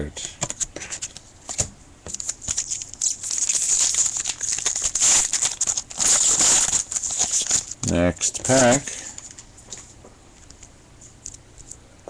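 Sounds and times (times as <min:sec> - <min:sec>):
plastic wrapper crinkling: 0:02.1 - 0:09.4.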